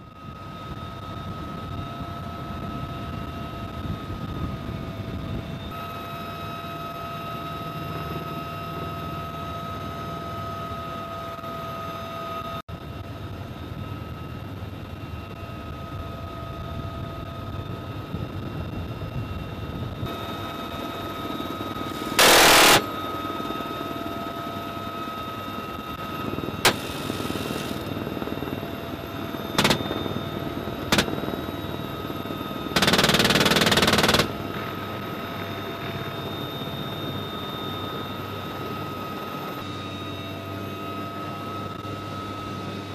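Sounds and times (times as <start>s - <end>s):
helicopter turbine and rotor whine: 0.0s - 42.9s
machine gun firing bursts: 22.0s - 22.9s, 29.6s - 30.0s, 30.9s - 31.2s, 32.8s - 34.4s.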